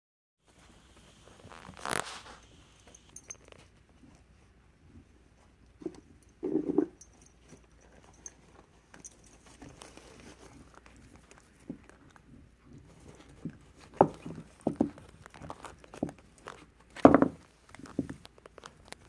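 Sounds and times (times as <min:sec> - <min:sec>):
dog rustling with a bone: 0:01.2 - 0:04.4, 0:07.4 - 0:19.0.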